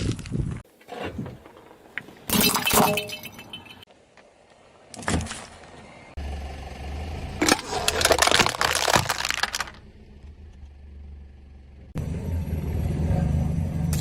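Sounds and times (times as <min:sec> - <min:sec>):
car engine running: 0:06.2 - 0:14.0
brittle crunching under a tyre: 0:07.4 - 0:09.9.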